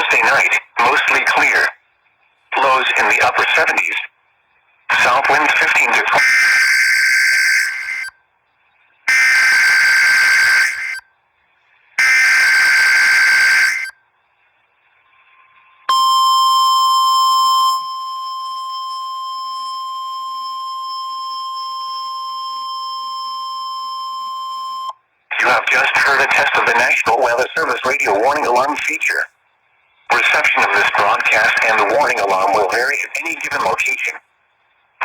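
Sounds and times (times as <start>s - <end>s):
steady warning alarm tone: 5.3s - 8.1s, 9.1s - 11.1s, 12.0s - 14.0s, 15.9s - 25.0s.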